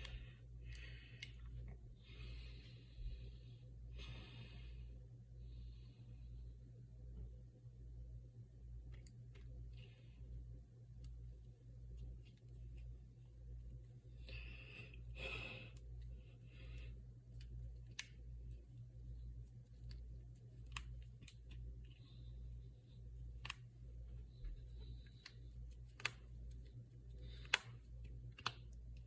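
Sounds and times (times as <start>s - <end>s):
low steady hum: 0.0s - 29.0s
knuckles cracking: 17.3s - 18.2s, 23.3s - 23.8s, 24.4s - 29.0s.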